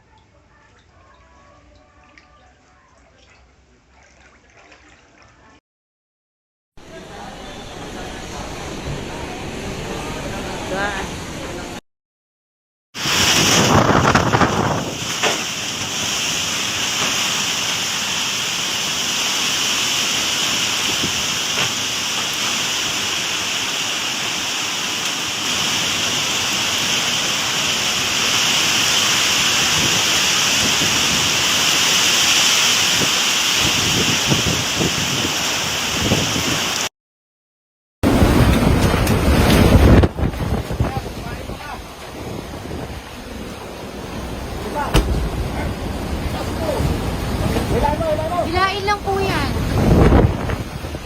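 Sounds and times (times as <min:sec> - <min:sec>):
heavy rain and wind: 0:06.8 - 0:11.8, 0:13.0 - 0:36.9, 0:38.0 - 0:51.0.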